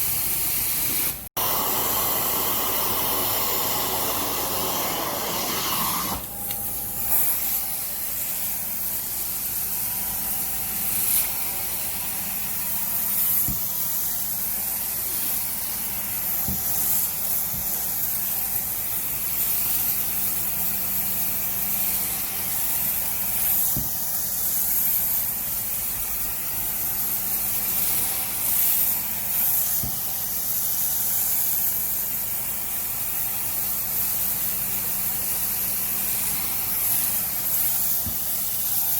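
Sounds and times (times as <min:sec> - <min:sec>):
cleaning machine hum: 0:00.0 - 0:18.7
cleaning wand hissing: 0:00.2 - 0:38.9.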